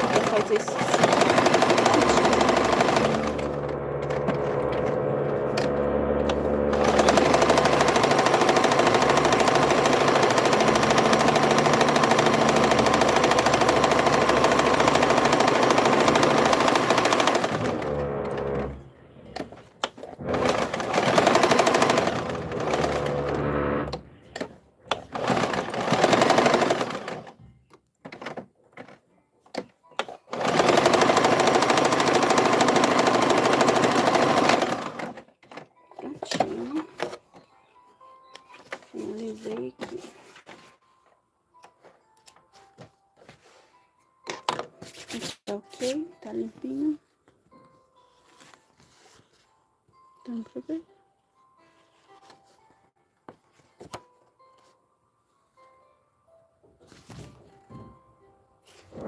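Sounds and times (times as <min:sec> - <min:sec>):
sewing machine stitching: 0:00.0 - 0:27.4, 0:30.0 - 0:35.3.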